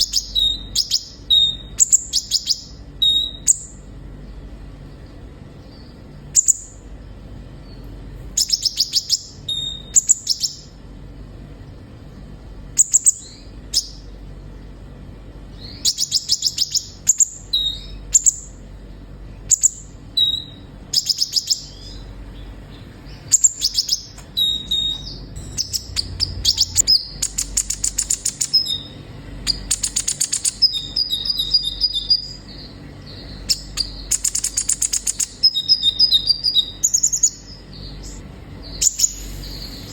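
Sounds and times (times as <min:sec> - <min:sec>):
bird high chirps and trills: 0:00.0 - 0:39.9.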